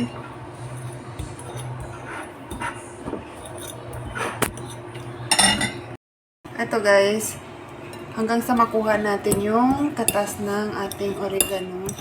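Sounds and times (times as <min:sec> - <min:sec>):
fork scraping on plate: 0:00.1 - 0:05.7
fork clinking on plate: 0:04.4 - 0:05.8.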